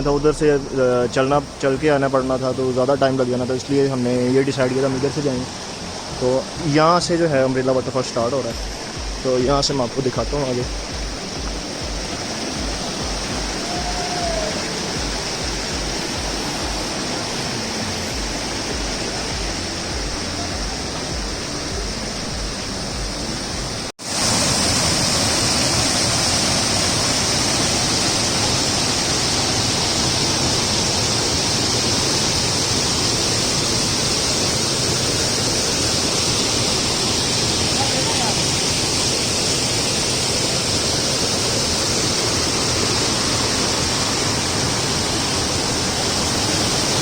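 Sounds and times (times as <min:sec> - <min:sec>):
waterfall rushing: 0:00.0 - 0:47.0.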